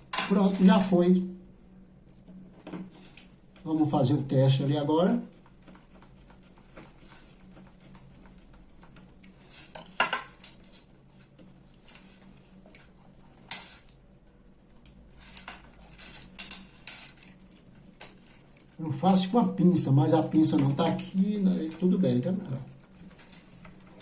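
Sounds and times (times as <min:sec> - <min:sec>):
small metal parts clicking: 0:14.8 - 0:18.8.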